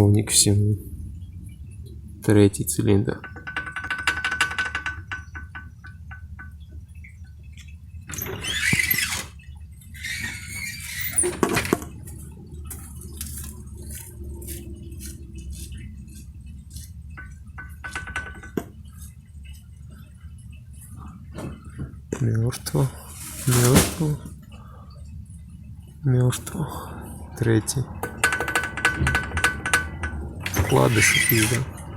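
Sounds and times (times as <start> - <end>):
steady low hum: 0.0 - 3.4, 11.4 - 31.9
engine parts scraping and rustling: 8.2 - 9.4, 23.0 - 24.4, 29.8 - 31.9.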